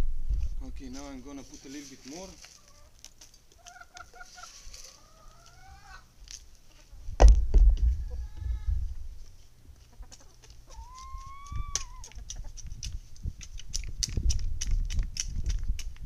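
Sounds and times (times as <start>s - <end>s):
chickens clucking: 2.1s - 7.1s, 7.8s - 13.7s
low rumbling: 7.0s - 9.3s
loud low thump: 7.2s - 8.0s.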